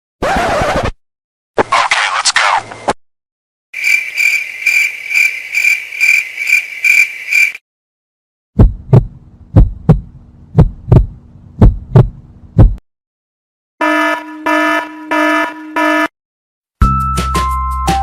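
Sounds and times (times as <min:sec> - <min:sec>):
heartbeat-like double thump: 0:08.6 - 0:12.8
low hum: 0:08.6 - 0:12.8.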